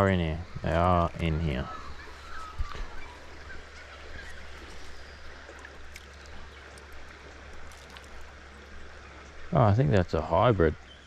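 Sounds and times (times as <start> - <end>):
river water flowing: 0.0 - 11.0
faint bird chirps: 0.4 - 7.5, 10.8 - 11.0.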